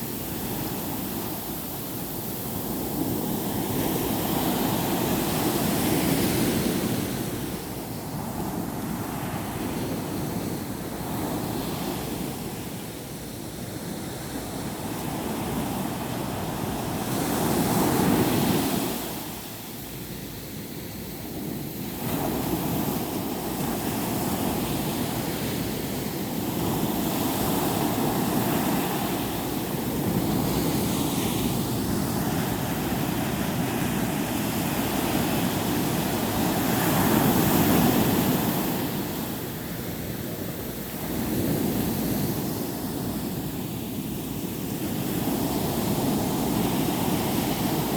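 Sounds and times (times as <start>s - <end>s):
sea surf washing onto beach: 0.0s - 47.9s.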